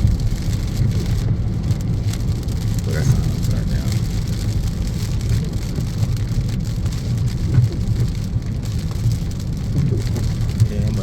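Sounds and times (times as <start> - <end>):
engine and road noise rumble: 0.0 - 11.0
rain falling on a car: 0.0 - 11.0.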